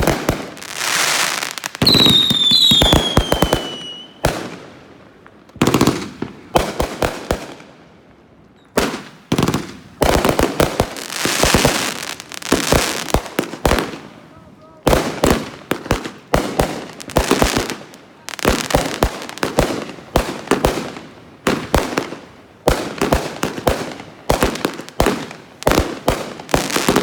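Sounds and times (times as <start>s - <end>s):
fireworks bangs: 0.0s - 7.7s, 8.7s - 14.2s, 14.8s - 27.0s
fireworks crackling: 0.0s - 7.7s, 8.4s - 27.0s
whistling shell: 1.8s - 4.2s.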